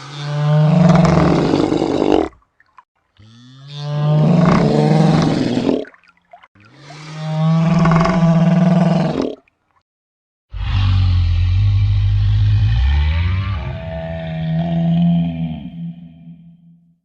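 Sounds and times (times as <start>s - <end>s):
low-pitched dinosaur roars: 10.5s - 16.8s.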